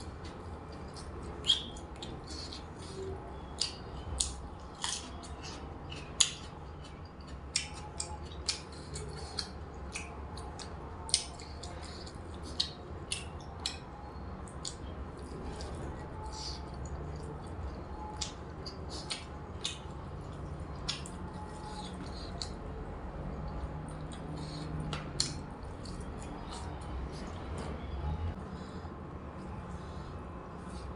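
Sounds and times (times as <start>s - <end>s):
person chewing crunchy food: 0.0s - 13.8s, 14.4s - 27.9s.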